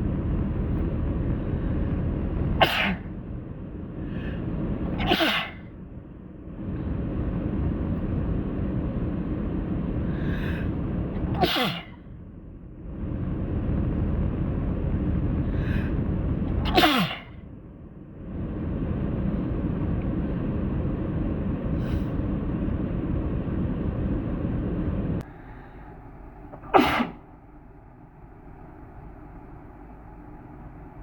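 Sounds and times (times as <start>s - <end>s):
low rumble: 0.0s - 31.0s
person sneezing: 2.6s - 3.1s, 5.0s - 5.7s, 11.2s - 12.0s, 16.6s - 17.4s, 26.6s - 27.2s.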